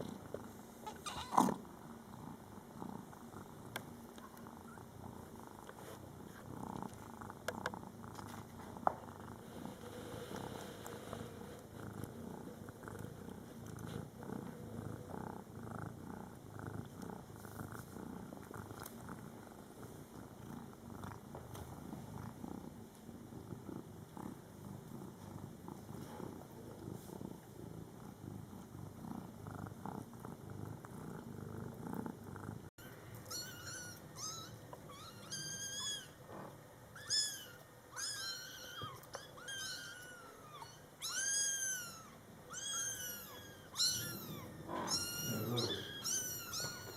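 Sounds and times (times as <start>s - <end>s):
cat purring: 0.0s - 32.7s, 38.2s - 46.9s
kittens meowing: 0.9s - 1.5s, 32.8s - 36.2s, 37.0s - 46.9s.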